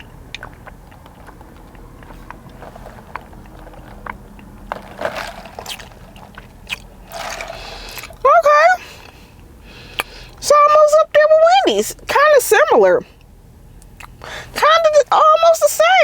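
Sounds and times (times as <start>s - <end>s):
sipping through a straw: 4.7s - 8.2s
breathy puffs: 7.1s - 8.2s, 14.2s - 14.6s.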